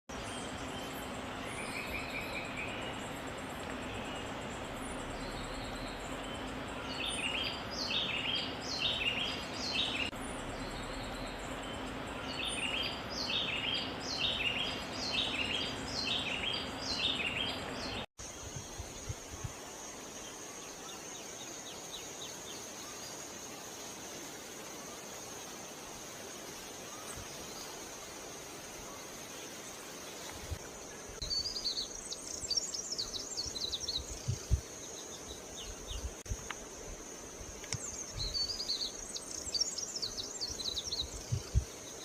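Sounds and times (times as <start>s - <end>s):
lovebirds chirping: 0.1s - 18.1s, 37.4s - 42.0s
steady high-pitched hum: 0.1s - 42.0s.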